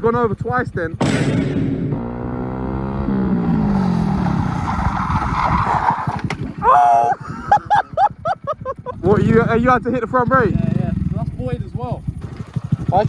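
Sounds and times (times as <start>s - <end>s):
motorcycle engine revs dropping: 0.9s - 7.0s, 12.1s - 13.0s
person shouting: 6.6s - 7.2s
excited voices: 6.6s - 8.0s.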